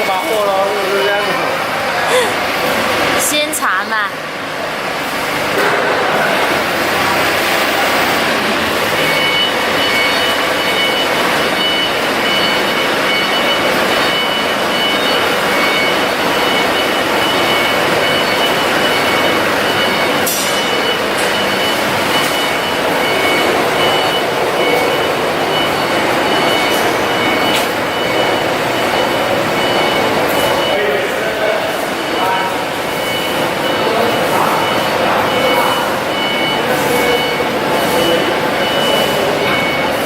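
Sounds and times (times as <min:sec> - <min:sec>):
diesel generator running: 0:00.0 - 0:40.0.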